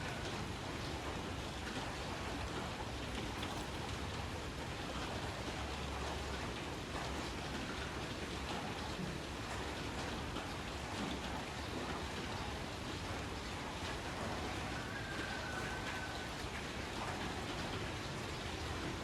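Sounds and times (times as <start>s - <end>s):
rain on a metal roof: 0.0s - 19.0s.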